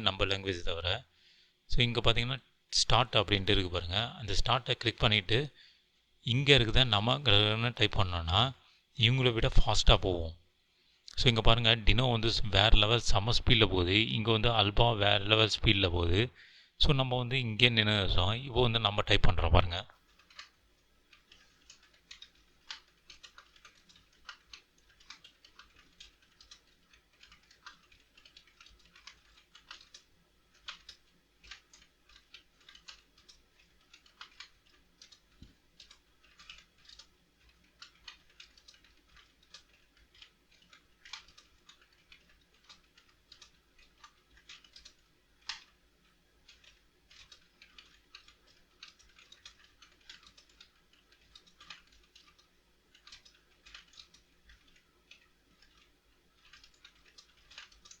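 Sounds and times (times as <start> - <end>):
keyboard typing clicks: 20.1 - 58.0.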